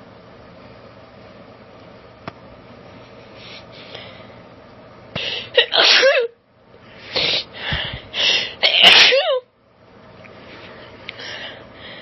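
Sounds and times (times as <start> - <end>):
woman sneezing: 5.5 - 6.3, 8.6 - 9.5.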